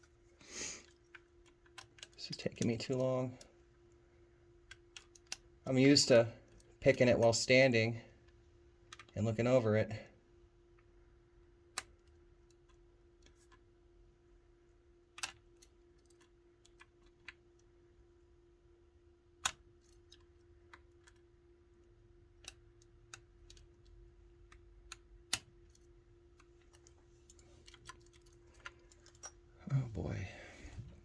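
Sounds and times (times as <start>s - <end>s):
faint steady hum: 0.0s - 31.0s
lock-picking tools clicking: 4.7s - 5.5s.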